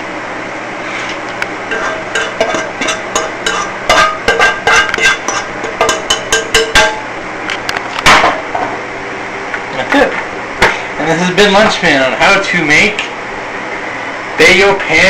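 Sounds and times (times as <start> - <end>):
metal utensil clinking on cookware: 1.7 - 7.0.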